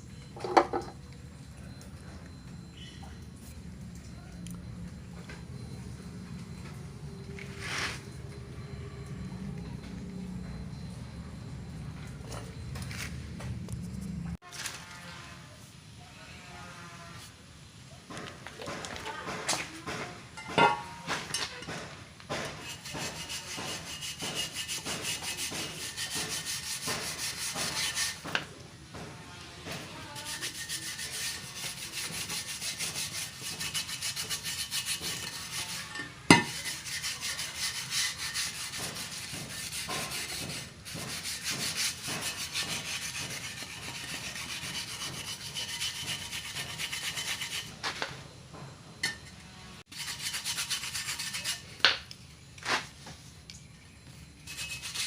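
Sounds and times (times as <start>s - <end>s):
rubbing strokes on wheel rim: 7.4s - 8.3s, 22.5s - 28.4s, 29.7s - 47.8s, 49.9s - 51.7s, 54.4s - 55.0s.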